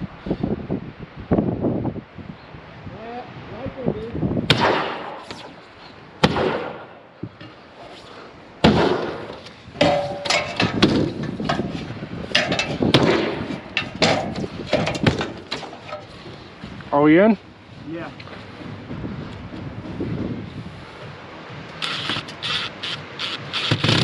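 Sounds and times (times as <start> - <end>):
sheet-metal roofing banging: 8.6 - 16.2.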